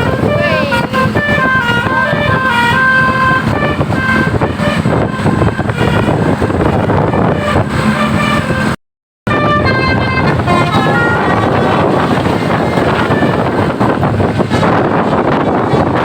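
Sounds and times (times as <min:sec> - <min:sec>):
musical bus horn: 0:00.0 - 0:15.1
road noise rushing: 0:00.0 - 0:16.0.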